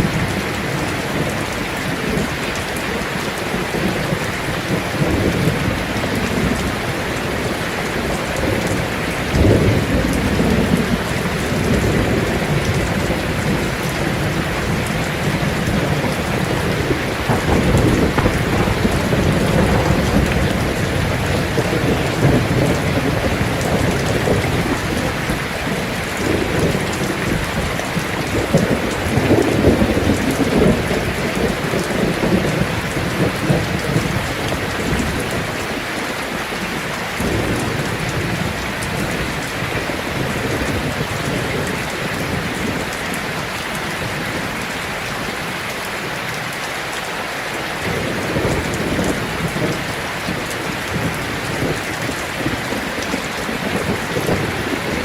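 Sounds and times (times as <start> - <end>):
low rolling thunder: 0.0 - 35.9, 36.5 - 44.6, 47.8 - 55.0
heavy rain on a tin roof: 0.0 - 55.0.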